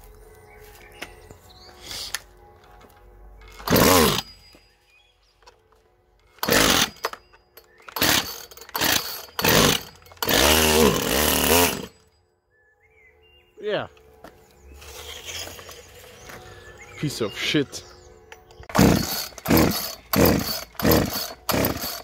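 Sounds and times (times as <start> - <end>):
chainsaw revving: 3.6 - 4.3, 6.4 - 7.2, 7.9 - 12.0, 18.7 - 22.0.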